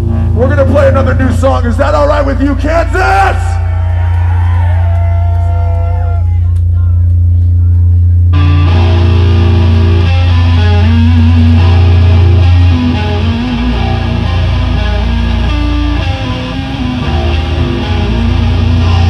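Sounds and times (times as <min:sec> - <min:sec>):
heavy sustained bass: 0:03.2 - 0:19.0
electric guitar riff: 0:08.3 - 0:19.0.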